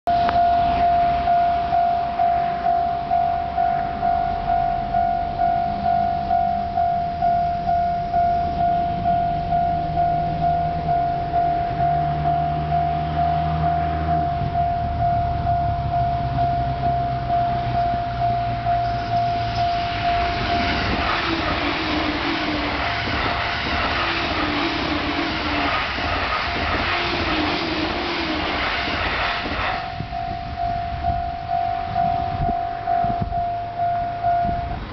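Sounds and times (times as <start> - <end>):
level crossing alarm bell: 0.1 - 25.6, 29.8 - 34.9
electric train rushing past: 0.1 - 34.9
train wheel clatter: 17.7 - 33.4.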